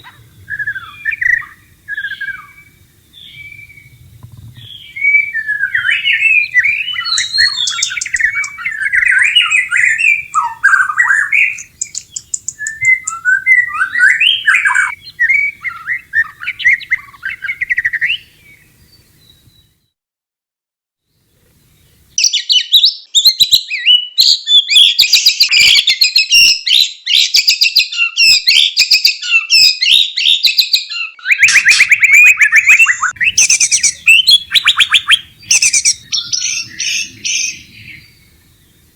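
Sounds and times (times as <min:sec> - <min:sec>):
bird singing whistled phrases: 0:00.0 - 0:04.0, 0:04.6 - 0:19.8, 0:22.2 - 0:38.9
bird rattling chatter: 0:04.0 - 0:13.9, 0:31.5 - 0:38.9.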